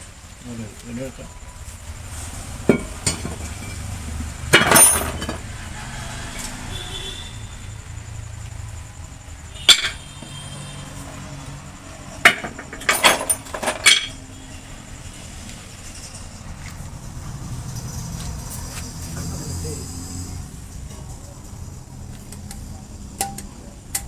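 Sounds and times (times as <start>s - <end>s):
metal tools clinking: 2.7s - 5.5s, 9.6s - 10.3s, 12.2s - 14.3s.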